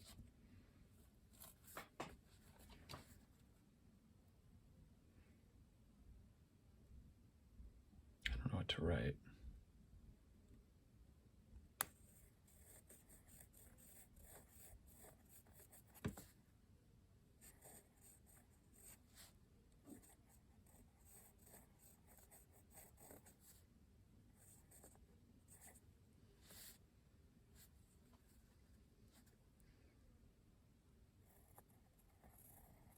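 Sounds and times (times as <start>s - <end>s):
pencil scratching on paper: 11.9s - 16.3s, 17.4s - 23.6s, 24.4s - 25.8s, 31.2s - 32.9s.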